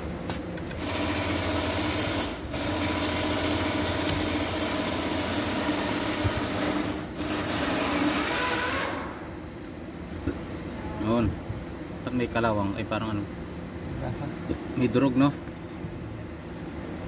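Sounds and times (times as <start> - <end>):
power tool whirring: 0.8 - 9.3.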